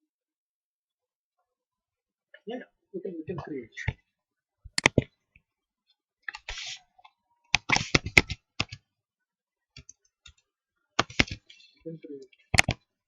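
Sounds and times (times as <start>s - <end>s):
computer keyboard typing: 4.8s - 5.1s, 7.5s - 8.8s, 9.8s - 10.4s, 11.0s - 12.9s.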